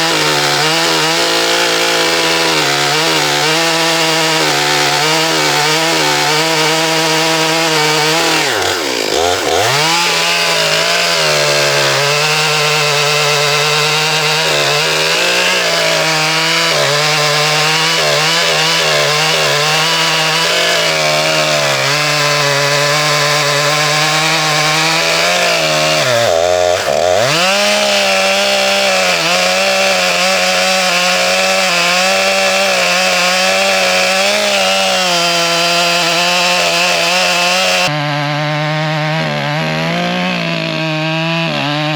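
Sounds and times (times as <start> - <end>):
chainsaw cutting log: 0.0 - 41.9.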